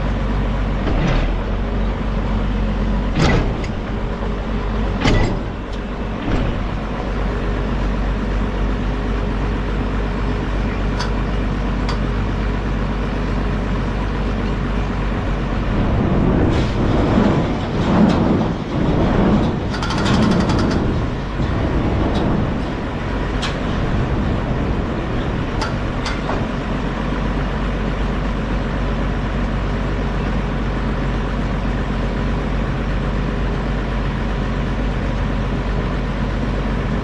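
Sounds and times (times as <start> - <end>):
tractor engine running: 0.0 - 37.0
metallic clanks and rattles: 3.0 - 8.0, 10.2 - 12.4, 16.4 - 26.9.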